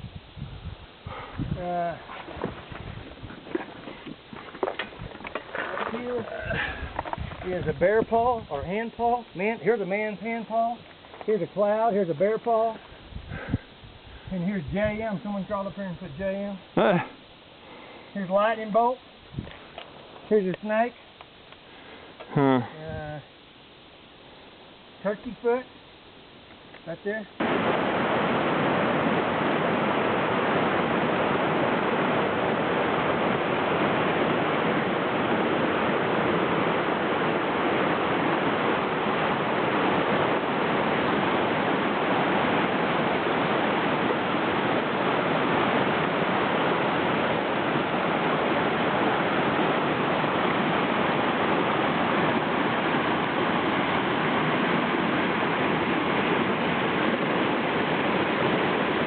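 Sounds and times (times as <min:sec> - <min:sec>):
river water rushing over rocks: 0:27.4 - 0:59.0.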